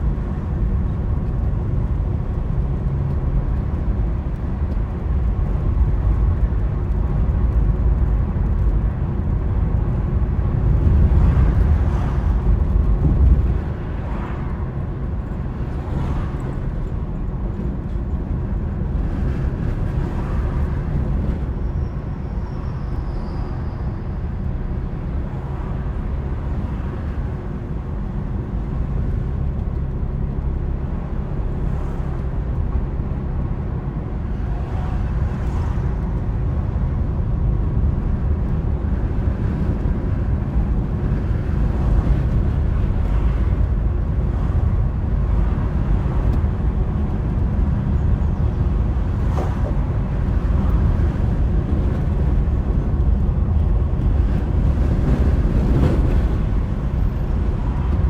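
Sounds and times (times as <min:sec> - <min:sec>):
car road and engine rumble: 0:00.0 - 0:58.0.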